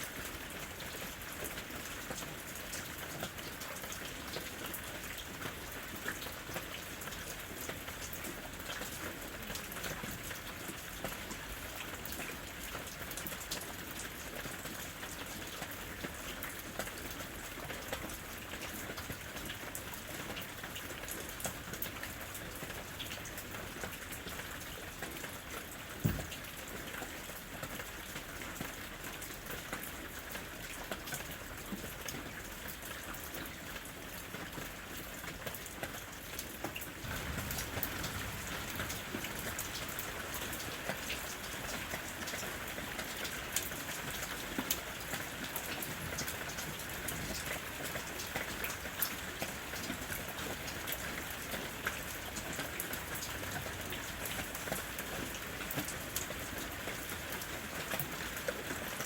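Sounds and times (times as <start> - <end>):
rain falling in forest: 0.0 - 59.0
raindrops pattering: 0.0 - 59.0.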